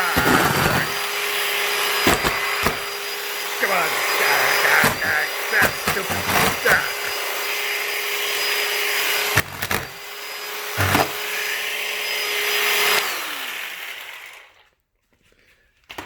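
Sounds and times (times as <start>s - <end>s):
chainsaw cutting cardboard: 0.0s - 14.7s
chainsaw bar knocking box: 2.1s - 2.9s, 10.8s - 11.2s.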